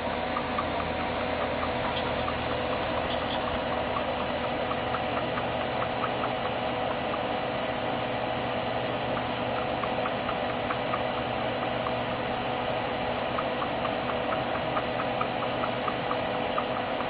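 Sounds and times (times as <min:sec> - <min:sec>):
cat breathing clicks: 0:00.0 - 0:17.0
computer fans humming: 0:00.0 - 0:17.0.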